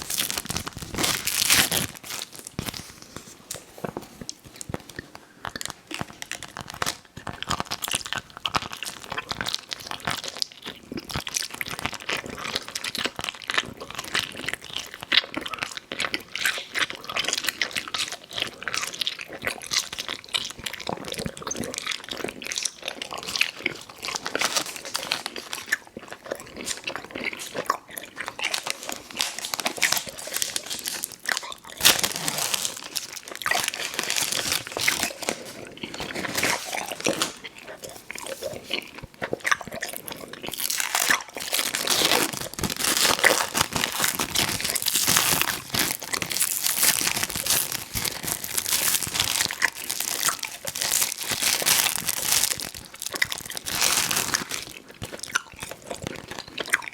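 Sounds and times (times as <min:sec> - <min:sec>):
wrapper crinkling: 0:00.0 - 0:10.2, 0:23.2 - 0:25.8, 0:28.2 - 0:56.5
chewing and mouth clicks: 0:04.2 - 0:56.9.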